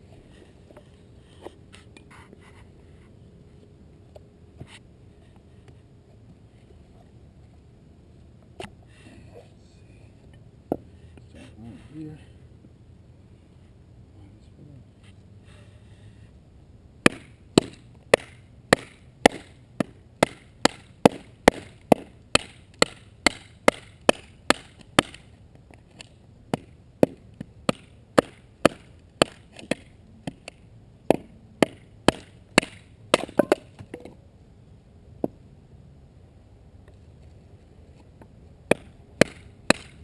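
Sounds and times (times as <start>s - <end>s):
knife striking wood: 26.0s - 34.0s, 38.7s - 40.0s.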